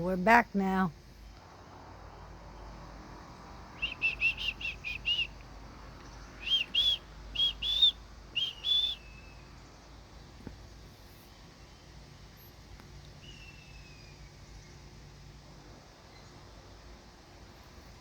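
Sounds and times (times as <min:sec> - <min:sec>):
hawk calling: 0:03.8 - 0:05.3, 0:06.4 - 0:09.0.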